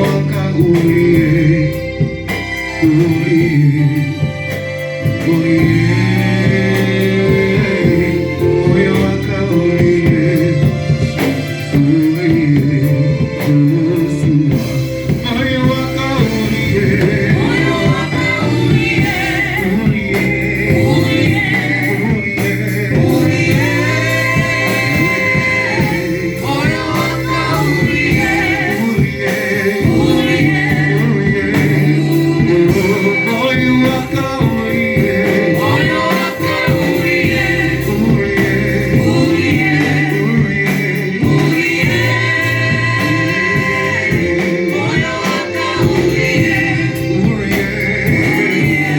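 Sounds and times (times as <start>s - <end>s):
instrumental backing: 0.0s - 48.9s
voices singing gospel: 0.0s - 48.9s.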